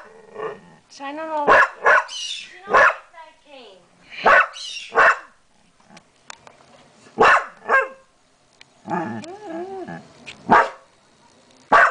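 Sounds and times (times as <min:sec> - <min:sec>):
dog barking: 0:01.5 - 0:02.1, 0:02.7 - 0:03.0, 0:04.2 - 0:05.3, 0:07.2 - 0:08.0, 0:10.5 - 0:10.8.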